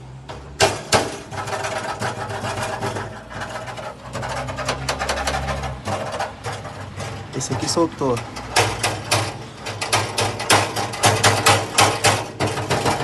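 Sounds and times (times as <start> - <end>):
loose part rattling rapidly: 0.6 - 13.0.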